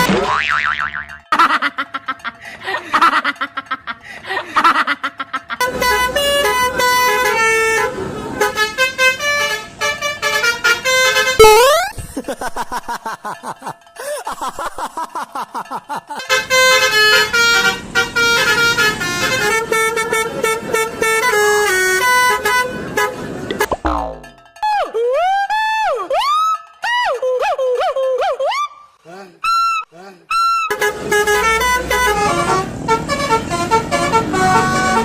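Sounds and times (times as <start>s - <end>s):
multi-tone bus horn tune: 5.6s - 11.9s, 16.2s - 23.7s, 30.7s - 35.0s.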